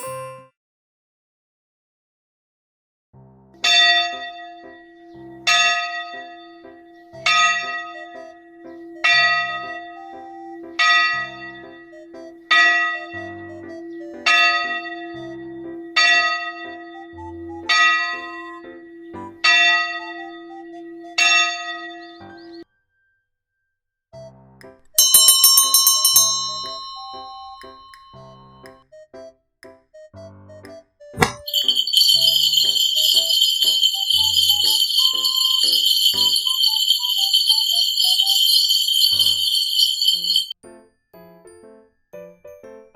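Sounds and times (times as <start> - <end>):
bell ringing: 4.8 - 22.1, 25.0 - 28.6, 31.2 - 40.6
steady low hum: 6.3 - 21.3.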